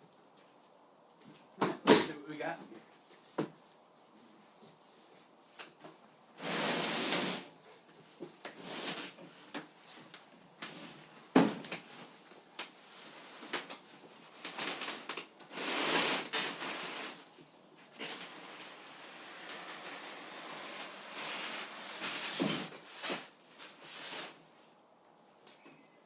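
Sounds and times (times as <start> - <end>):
packaging rustling and scraping: 11.8 - 24.6.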